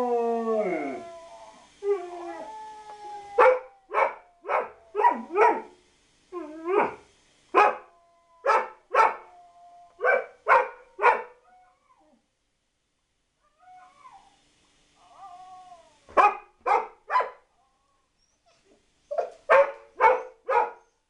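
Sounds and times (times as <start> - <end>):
faint thin whine: 0.0 - 12.4
dog barking: 3.4 - 5.7, 7.6 - 7.8, 8.5 - 9.2, 10.0 - 11.4, 16.2 - 17.4, 19.2 - 20.8.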